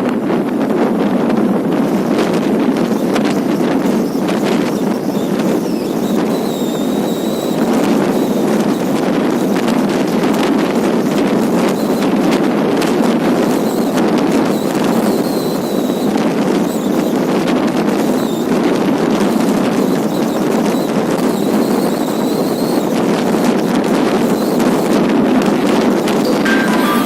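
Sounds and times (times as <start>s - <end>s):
wind buffeting microphone: 0.0s - 27.0s
faint high whistle: 26.2s - 27.0s.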